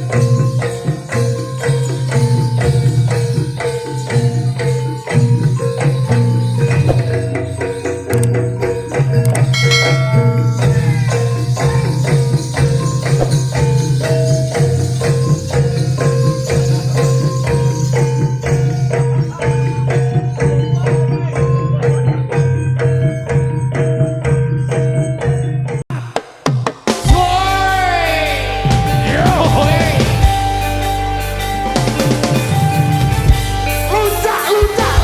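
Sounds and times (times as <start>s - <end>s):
gamelan metal percussion: 0.0s - 35.0s.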